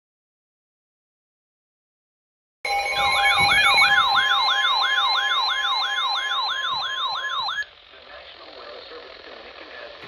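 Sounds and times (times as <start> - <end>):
steady tones: 2.7 - 7.6
siren-like yelping alert tone: 2.7 - 7.7.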